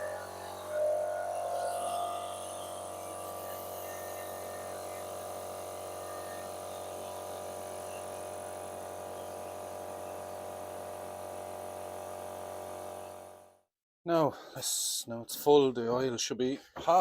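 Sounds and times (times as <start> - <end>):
air compressor droning: 0.0 - 13.5.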